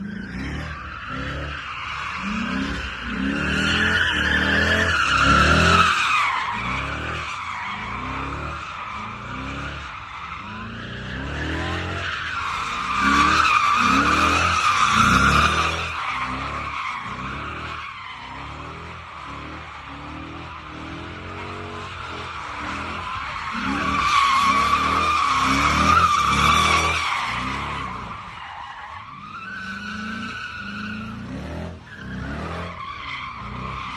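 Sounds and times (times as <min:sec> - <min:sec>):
car engine revving: 0:00.0 - 0:33.9
car tires squealing: 0:00.0 - 0:33.9.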